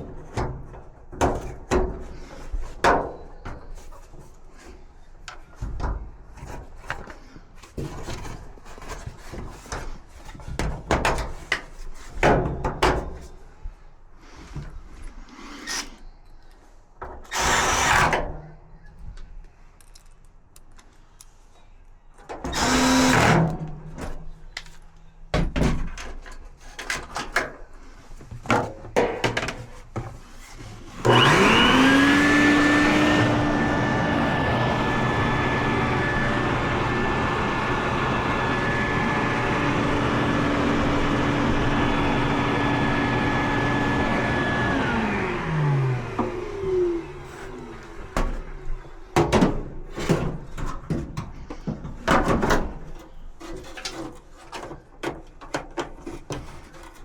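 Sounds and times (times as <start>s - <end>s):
electric motor whirring: 22.6s - 23.2s, 31.0s - 46.8s.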